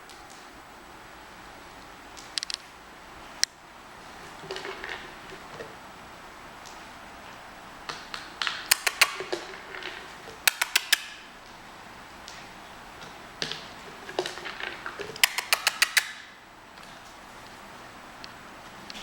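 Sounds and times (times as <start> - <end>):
puppies' claws clicking and tapping: 7.9 - 11.6, 12.2 - 17.2.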